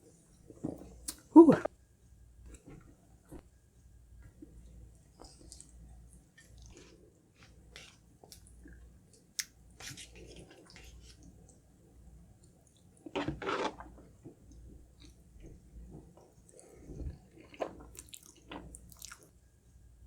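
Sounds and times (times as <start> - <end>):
chewing with wet mouth clicks: 7.7 - 11.6, 17.3 - 19.3.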